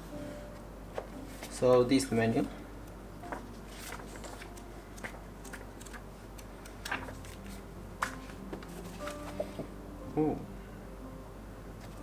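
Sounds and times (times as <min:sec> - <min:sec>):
paper and packaging handling clicks: 0:03.2 - 0:09.4.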